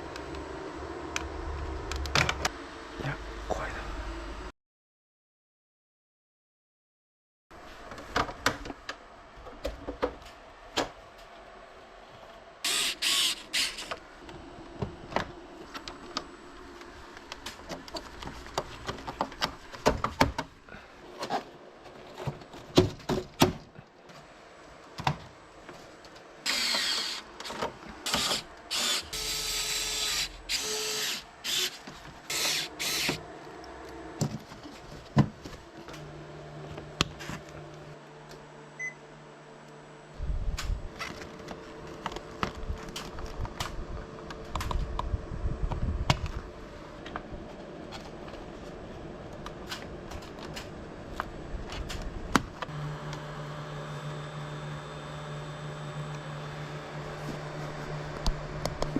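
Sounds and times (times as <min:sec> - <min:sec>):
power screwdriver whirring: 0:12.7 - 0:14.0, 0:26.5 - 0:27.3, 0:28.1 - 0:33.2.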